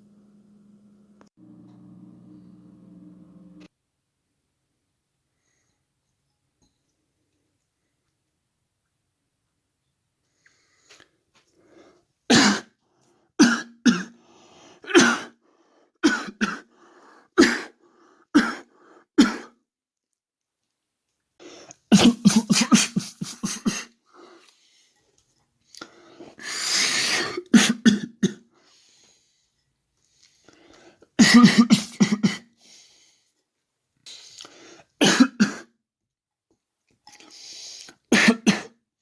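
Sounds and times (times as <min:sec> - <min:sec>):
person coughing: 0:12.3 - 0:12.7, 0:13.4 - 0:14.2, 0:14.9 - 0:15.4, 0:16.0 - 0:16.7, 0:17.4 - 0:17.8, 0:18.4 - 0:19.6, 0:21.9 - 0:24.0, 0:27.2 - 0:28.5, 0:31.2 - 0:32.5, 0:35.0 - 0:35.7, 0:38.1 - 0:38.7.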